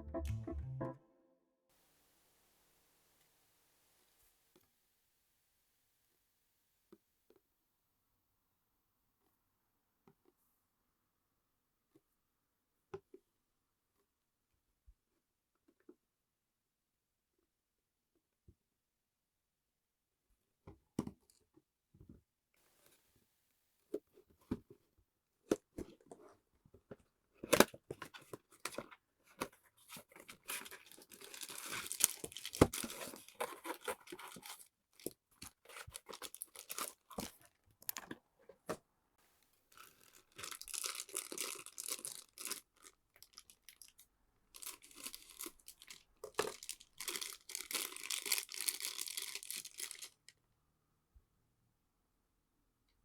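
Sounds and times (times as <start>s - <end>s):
plastic tearing and crinkling: 30.2s - 37.6s, 39.7s - 44.0s, 44.6s - 50.3s.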